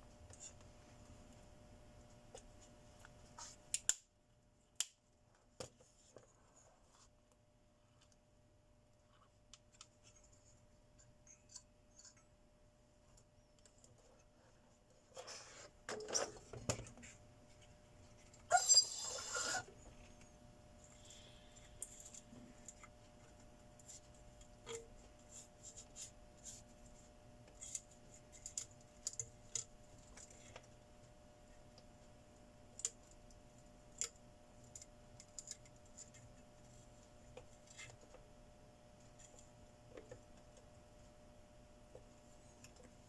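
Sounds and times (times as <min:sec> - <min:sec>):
faint steady hum: 0:00.0 - 0:43.0
small clicks and scrapes of tools: 0:09.2 - 0:12.3, 0:13.2 - 0:31.2, 0:32.8 - 0:38.2.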